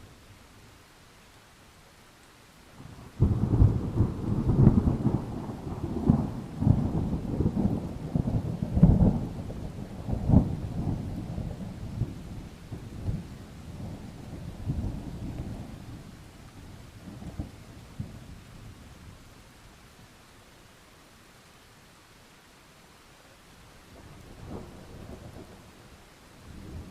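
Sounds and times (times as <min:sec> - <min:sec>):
rain: 0:00.0 - 0:26.9
thunder clap and rumble: 0:03.1 - 0:18.4.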